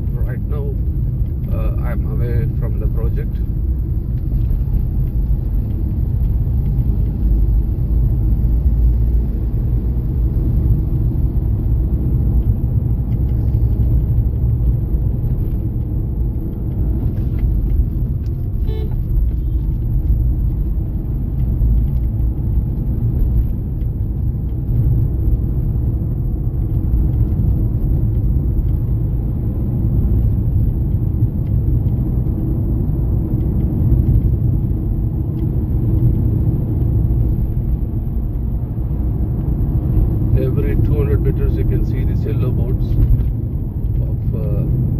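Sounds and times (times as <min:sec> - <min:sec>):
moving car rumble: 0:00.0 - 0:44.9.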